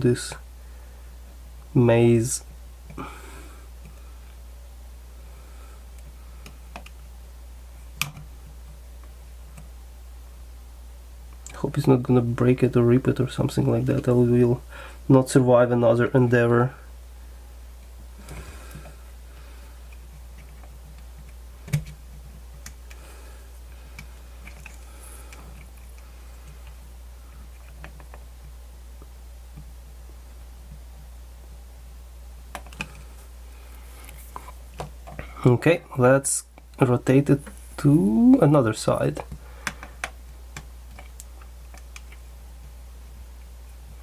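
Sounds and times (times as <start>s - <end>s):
steady low hum: 0.0s - 44.0s
plastic parts clicking and tapping: 32.5s - 33.0s.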